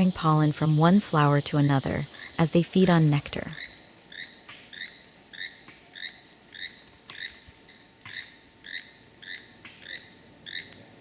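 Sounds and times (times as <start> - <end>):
high-pitched insect trill: 0.0 - 11.0.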